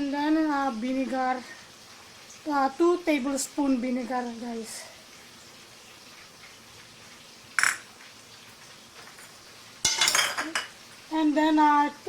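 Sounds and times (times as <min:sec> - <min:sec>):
kitchen utensils clinking: 0:07.6 - 0:07.9, 0:09.0 - 0:10.8
utensils clicking and clattering: 0:09.0 - 0:10.7.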